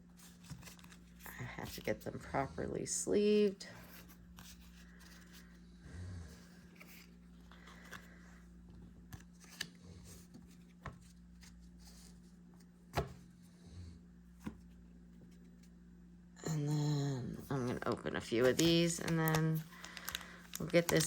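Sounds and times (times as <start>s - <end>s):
steady low hum: 0.0s - 21.0s
cards rustling: 0.1s - 2.0s, 3.6s - 5.6s, 6.4s - 13.3s, 17.5s - 21.0s.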